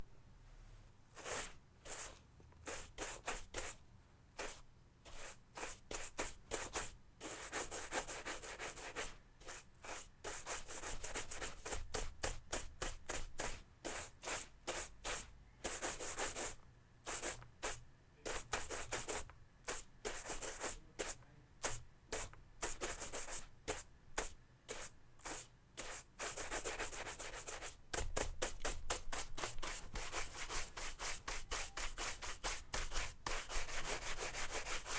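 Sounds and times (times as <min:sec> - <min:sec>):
brush scrubbing a surface: 0:24.7 - 0:34.9.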